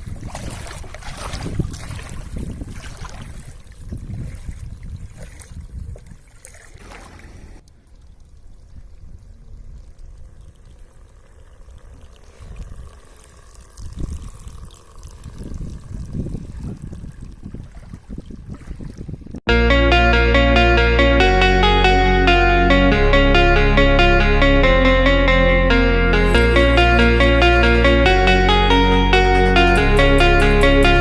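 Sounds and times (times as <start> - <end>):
wind rumbling on microphone: 0.0 - 7.6, 8.2 - 19.4
water splashing and trickling: 0.0 - 19.4.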